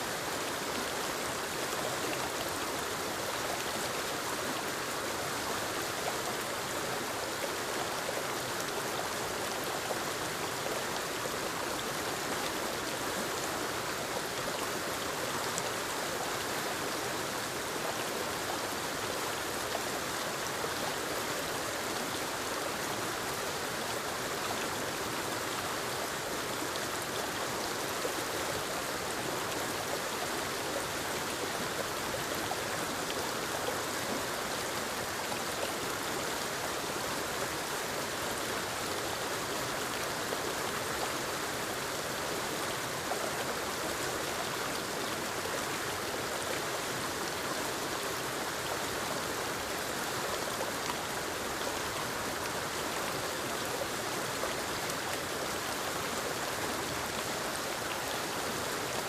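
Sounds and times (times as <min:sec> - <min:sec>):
waterfall rushing over rocks: 0:00.0 - 0:59.0.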